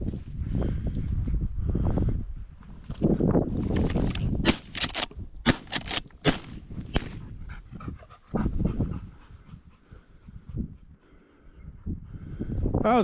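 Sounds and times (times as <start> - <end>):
dog panting: 7.2 - 12.2.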